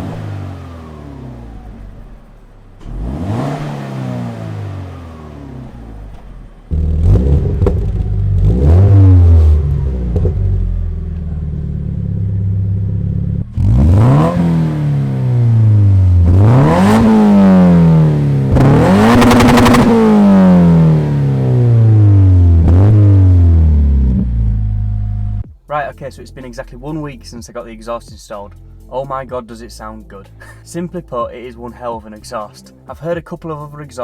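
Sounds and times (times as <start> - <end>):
car engine revving: 0.0 - 25.5
car engine idling: 0.0 - 26.0.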